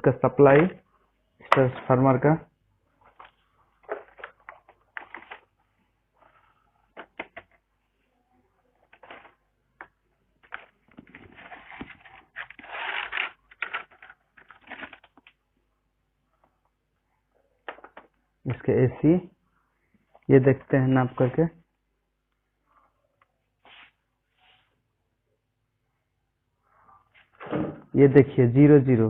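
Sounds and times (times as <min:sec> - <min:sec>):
clicks and knocks of handling wires: 0:06.9 - 0:07.7, 0:13.2 - 0:15.4, 0:17.6 - 0:18.2.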